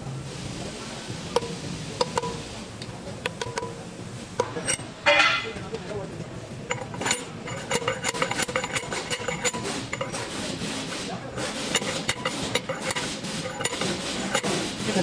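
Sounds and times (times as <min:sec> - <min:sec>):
metal tools clinking: 0:04.4 - 0:05.6, 0:06.6 - 0:10.3
loud metal scraping rasp: 0:06.7 - 0:15.0.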